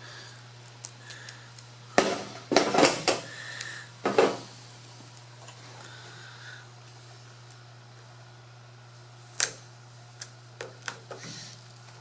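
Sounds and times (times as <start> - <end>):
scissors snipping tape: 9.4 - 9.6.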